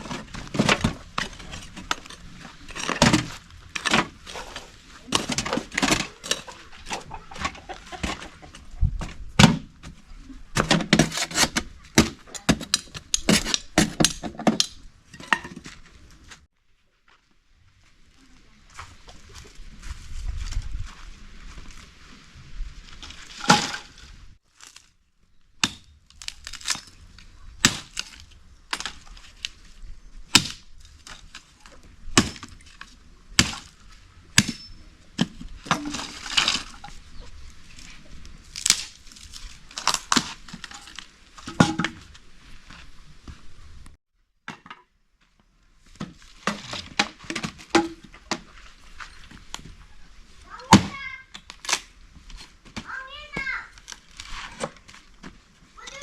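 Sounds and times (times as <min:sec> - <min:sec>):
sharp cracks and knocks: 0:25.6 - 0:29.6, 0:30.3 - 0:33.8, 0:38.5 - 0:42.2.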